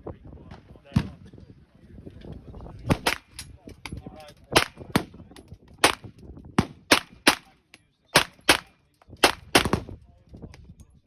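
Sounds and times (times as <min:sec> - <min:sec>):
gunshots: 0:02.9 - 0:03.4, 0:04.6 - 0:05.1, 0:05.8 - 0:07.5, 0:08.2 - 0:09.9.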